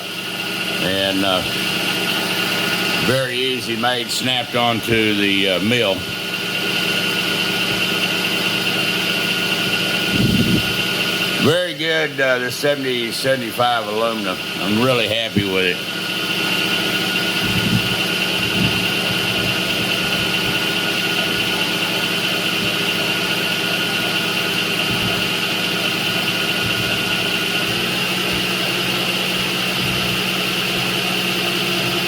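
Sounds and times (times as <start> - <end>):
milling machine hum: 0.0 - 32.0
high whine: 10.1 - 31.0.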